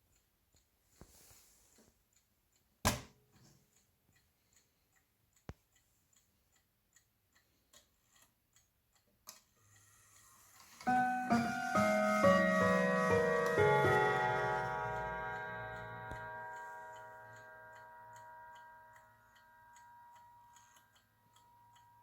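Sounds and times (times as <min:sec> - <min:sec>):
clock ticking softly: 0:00.0 - 0:22.0.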